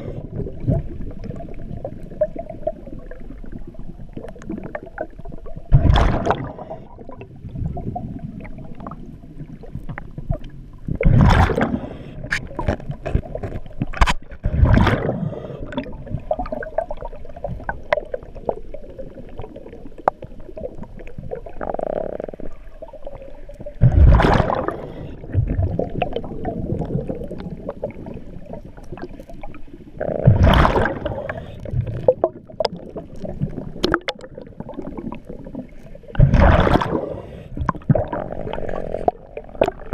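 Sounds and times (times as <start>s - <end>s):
regulator inhale: 0.0s - 0.3s, 6.5s - 7.0s, 11.7s - 12.3s, 15.1s - 15.9s, 24.6s - 25.3s, 31.0s - 31.7s, 36.9s - 37.7s
exhaled bubbles underwater: 0.0s - 39.9s
crackle of small clicks: 0.8s - 6.1s, 8.7s - 15.0s, 15.7s - 23.8s, 25.4s - 29.8s, 30.6s - 37.0s.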